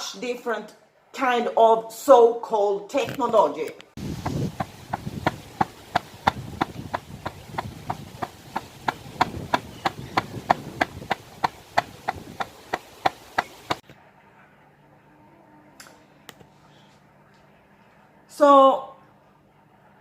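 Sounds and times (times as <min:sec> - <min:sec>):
rhythmic sharp knocks: 0:04.1 - 0:13.8.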